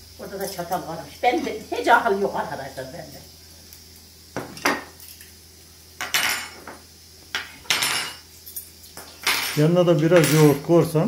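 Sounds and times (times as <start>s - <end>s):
forks clinking against plates: 6.0s - 6.8s, 7.4s - 10.7s.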